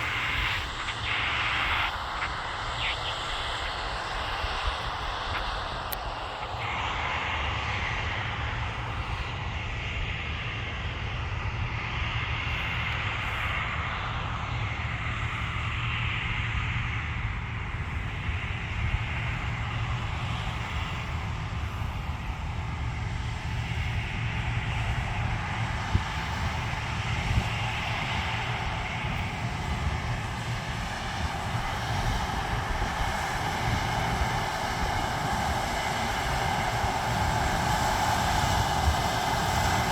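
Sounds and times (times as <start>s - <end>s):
harvester engine droning: 14.3s - 39.9s.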